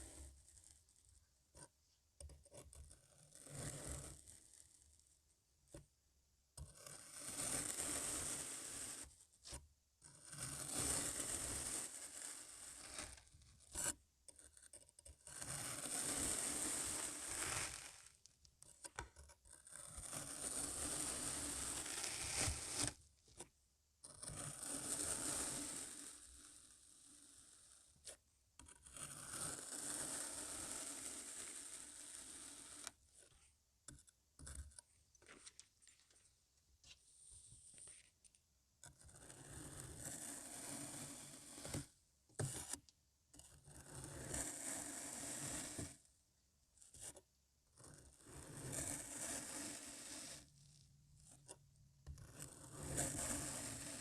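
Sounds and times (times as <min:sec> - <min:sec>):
blade scraping through sand: 0:15.7 - 0:18.1, 0:20.3 - 0:23.0.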